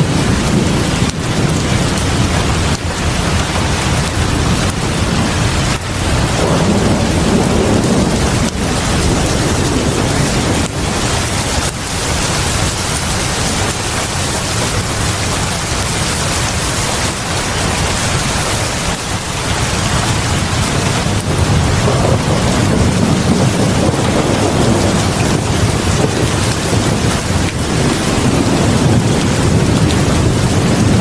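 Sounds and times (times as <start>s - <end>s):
low rumble: 0.0s - 13.8s
heavy rain pouring: 0.0s - 31.0s.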